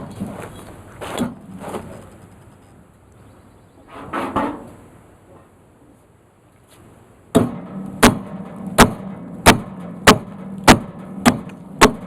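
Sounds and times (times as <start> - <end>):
heavy knocks on wood: 7.4 - 12.0.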